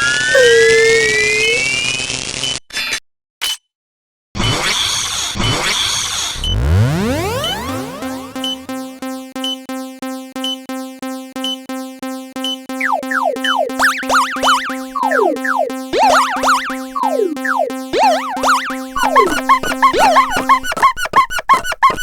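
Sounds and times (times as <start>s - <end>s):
electronic bell ringing: 12.8s - 20.4s.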